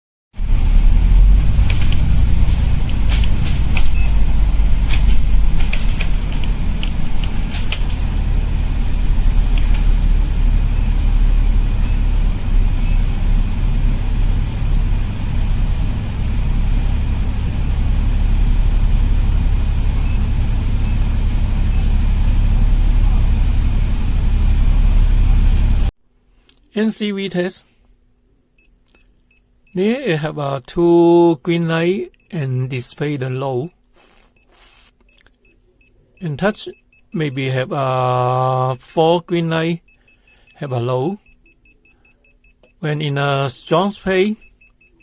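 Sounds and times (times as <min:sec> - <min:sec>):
steady low rumble: 0:00.4 - 0:25.9.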